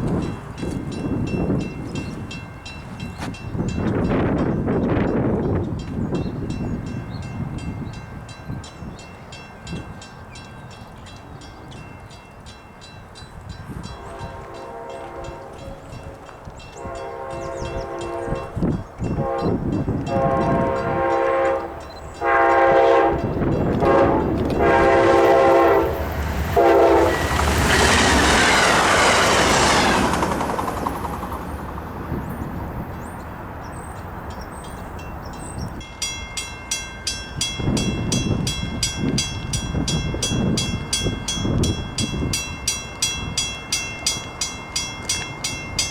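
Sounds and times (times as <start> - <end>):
train passing rush: 0.0 - 45.9
wheels clicking on rails: 9.7 - 45.9
train horn blasts: 13.8 - 29.1.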